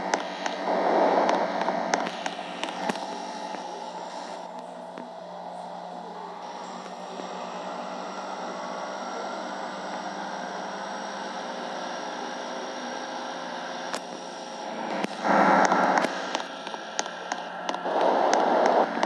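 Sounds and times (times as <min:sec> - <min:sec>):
rush of noise: 0:00.0 - 0:04.6, 0:14.0 - 0:19.0.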